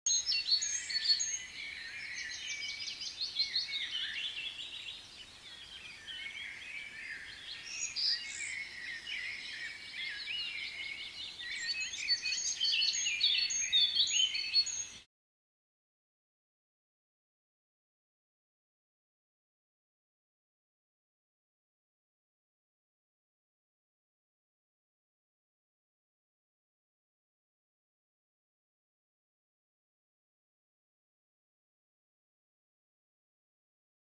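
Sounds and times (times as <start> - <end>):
birds chirping and singing: 0.1 - 15.0.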